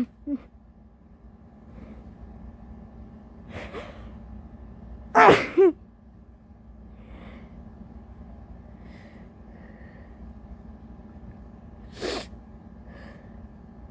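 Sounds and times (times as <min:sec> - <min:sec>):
woman sneezing: 0:05.2 - 0:05.7.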